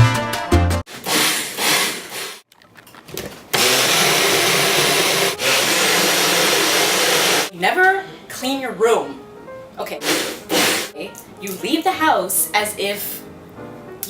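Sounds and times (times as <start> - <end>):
blender running: 0.9 - 2.4, 3.5 - 7.5, 10.0 - 10.9.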